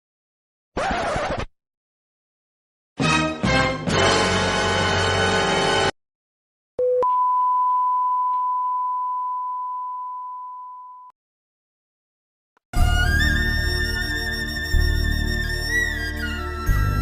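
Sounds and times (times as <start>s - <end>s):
music: 3.0s - 5.9s, 12.7s - 17.0s.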